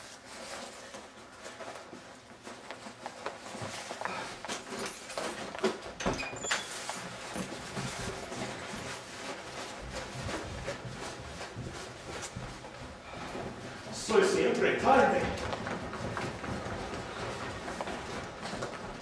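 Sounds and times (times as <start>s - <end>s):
rustling: 0.0s - 19.0s.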